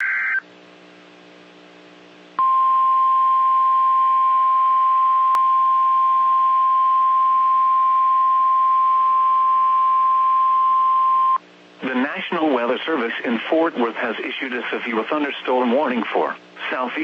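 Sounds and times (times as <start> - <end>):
faint electrical hum: 0.0 - 17.0
radio receiver hiss: 11.7 - 17.0.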